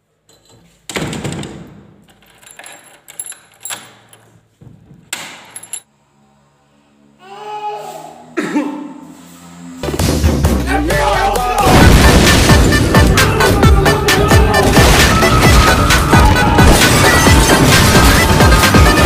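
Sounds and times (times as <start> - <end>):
person coughing: 8.4 - 9.0.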